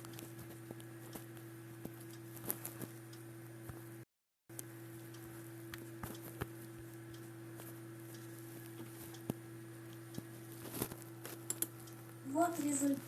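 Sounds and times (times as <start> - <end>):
low electrical hum and hiss: 0.0 - 13.0
faint clicks: 11.4 - 12.0.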